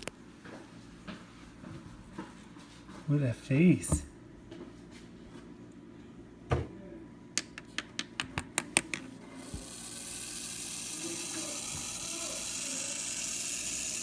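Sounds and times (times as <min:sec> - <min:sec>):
snake hissing: 0:09.5 - 0:14.0.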